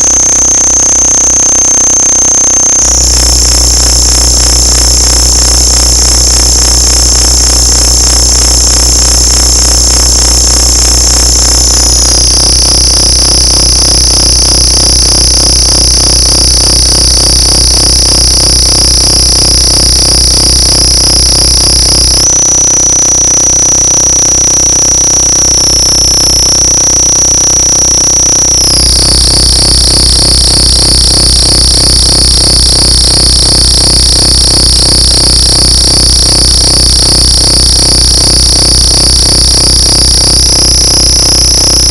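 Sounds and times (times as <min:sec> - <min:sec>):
low drone: 0:00.0 - 0:14.2
distorted electronic noise: 0:00.0 - 0:41.9
piercing high-pitched tones: 0:00.0 - 0:41.9.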